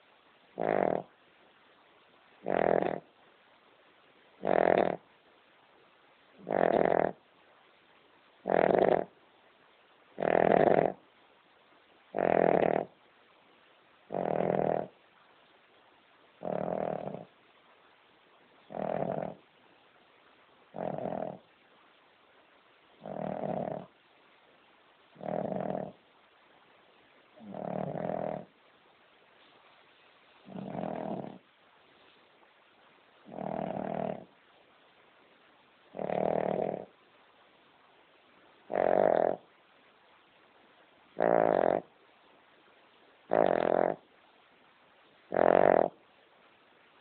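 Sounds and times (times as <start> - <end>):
dog snoring: 0.6 - 1.1, 2.4 - 3.1, 4.4 - 5.0, 6.4 - 7.2, 8.4 - 9.1, 10.2 - 11.0, 12.1 - 13.0, 14.1 - 15.0, 16.4 - 17.3, 18.6 - 19.4, 20.7 - 21.5, 23.0 - 23.9, 25.1 - 26.0, 27.4 - 28.5, 30.4 - 31.4, 33.2 - 34.3, 35.9 - 37.0, 38.6 - 39.5, 41.1 - 41.9, 43.3 - 44.0, 45.3 - 46.0.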